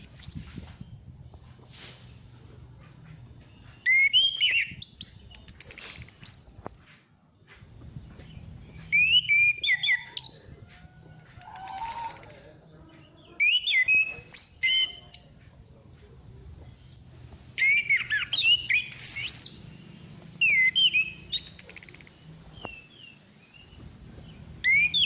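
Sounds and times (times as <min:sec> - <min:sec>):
thrush singing whistles: 0:00.0 - 0:01.0, 0:03.8 - 0:07.0, 0:08.8 - 0:10.4, 0:11.2 - 0:12.6, 0:13.4 - 0:15.3, 0:17.5 - 0:23.2, 0:24.6 - 0:25.0.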